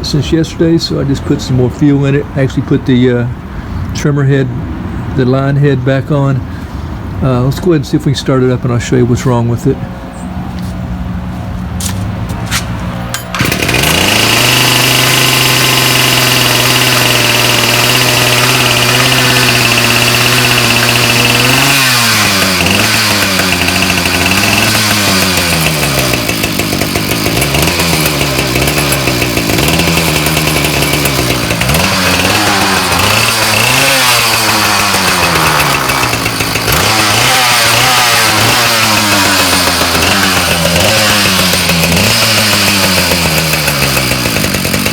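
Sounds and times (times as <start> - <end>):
trimmer engine pull-started: 12.6 - 44.9
trimmer engine idling: 13.1 - 44.9
trimmer engine revving: 13.3 - 44.9.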